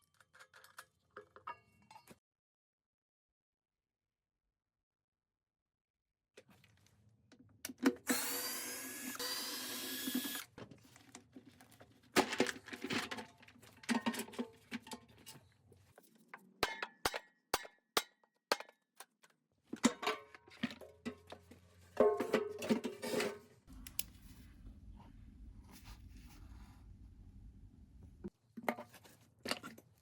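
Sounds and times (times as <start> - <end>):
power drill whine: 8.1 - 10.5.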